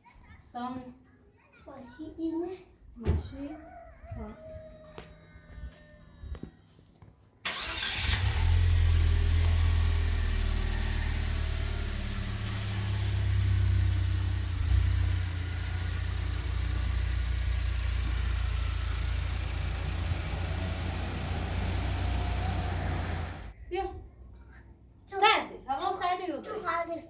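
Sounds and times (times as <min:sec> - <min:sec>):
vehicle engine starting and running: 0:07.4 - 0:23.6.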